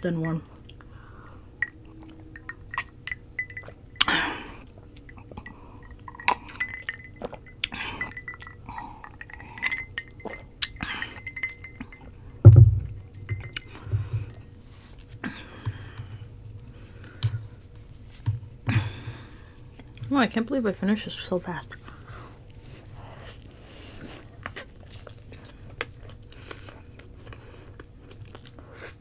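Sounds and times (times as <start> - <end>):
knife and fork clinking: 1.6 - 4.1, 5.1 - 12.4, 13.0 - 13.9
glass mug clinks: 1.6 - 4.5, 5.1 - 14.4
heavy thump: 12.4 - 14.3.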